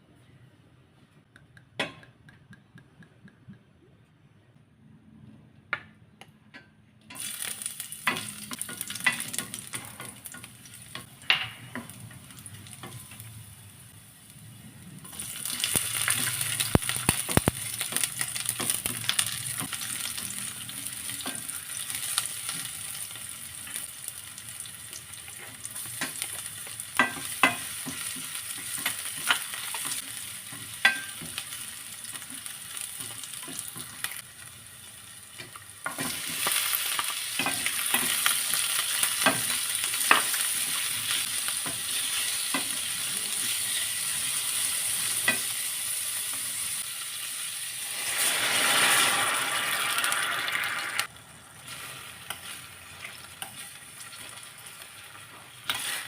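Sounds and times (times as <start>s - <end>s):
food sizzling in oil: 7.1s - 56.0s
spatula scraping a pan: 55.7s - 56.0s.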